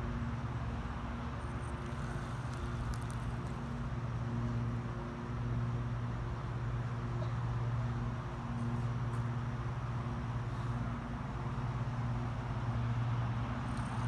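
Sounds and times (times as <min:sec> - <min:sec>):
low motor hum: 0:00.0 - 0:04.6.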